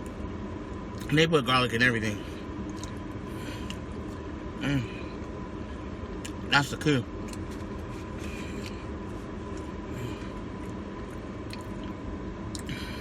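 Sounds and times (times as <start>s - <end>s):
low background hum: 0.0s - 13.0s
person chewing food: 2.6s - 4.2s, 7.2s - 12.8s.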